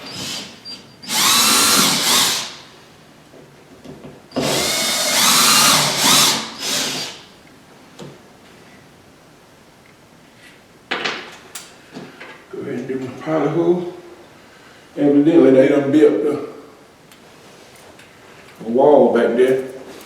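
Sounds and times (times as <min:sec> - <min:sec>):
power drill boring into wall: 0:00.0 - 0:02.6, 0:04.4 - 0:07.3.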